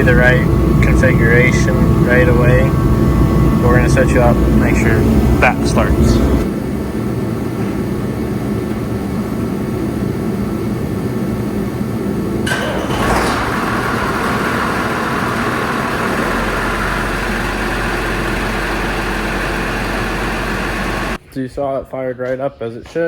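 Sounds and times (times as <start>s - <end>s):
tractor engine starting and running: 0.0s - 6.5s, 12.4s - 21.2s.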